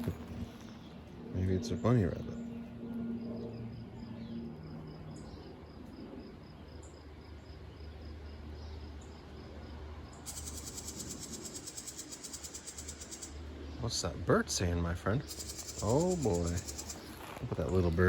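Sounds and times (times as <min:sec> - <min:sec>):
insects chirping: 0:02.4 - 0:14.0, 0:15.1 - 0:18.0
pulsing high insect buzz: 0:10.0 - 0:13.6, 0:15.2 - 0:17.4.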